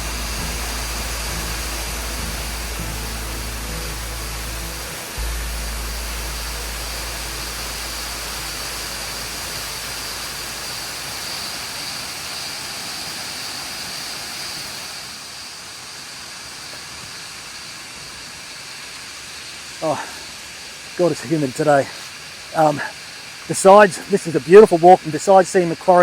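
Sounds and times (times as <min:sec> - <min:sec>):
low rumble: 0:00.0 - 0:10.7
cicadas chorus: 0:00.0 - 0:26.0.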